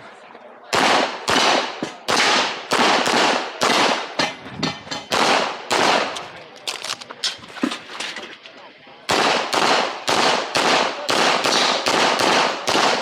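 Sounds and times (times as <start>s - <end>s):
handgun shots echoing: 5.0s - 7.0s.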